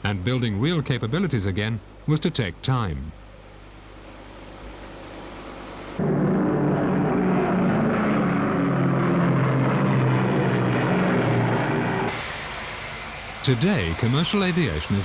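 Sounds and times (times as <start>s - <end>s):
propeller aircraft engines droning: 3.6s - 15.0s.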